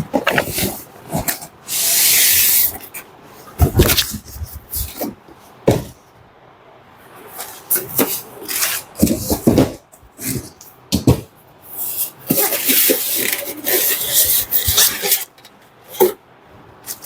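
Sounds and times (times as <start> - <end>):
packing knocks and rubbing: 0.0 - 1.5, 3.6 - 6.0, 7.3 - 11.3, 12.3 - 15.3
cardboard box hissing scrape: 0.3 - 2.8.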